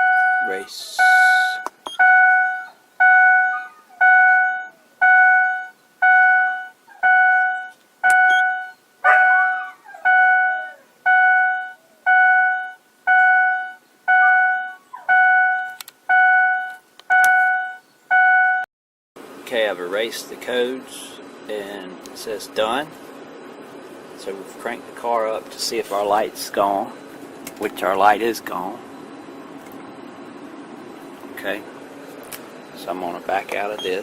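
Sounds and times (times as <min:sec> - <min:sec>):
electronic car warning chime: 0:00.0 - 0:18.6, 0:33.7 - 0:34.0.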